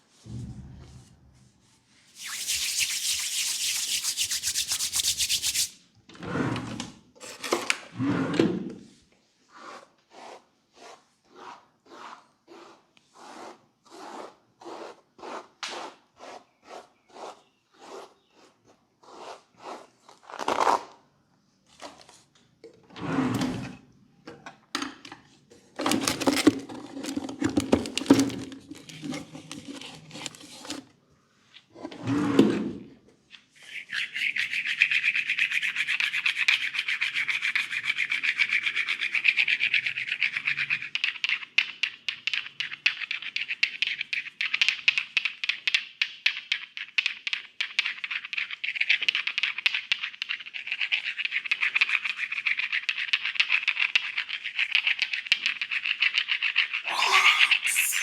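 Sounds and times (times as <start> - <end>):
hands rubbing hair and scalp: 2.2 - 5.8.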